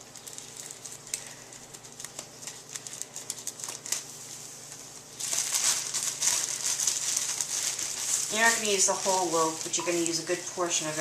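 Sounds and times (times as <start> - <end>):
plastic bag crinkling: 0.0 - 4.4, 5.0 - 11.0.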